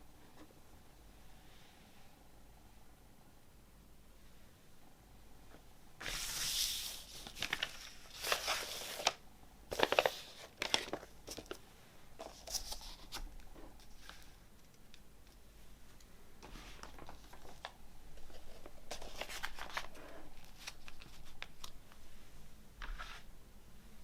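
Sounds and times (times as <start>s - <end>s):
paper and cardboard rustling: 6.0s - 11.6s, 12.2s - 14.3s, 16.4s - 21.7s.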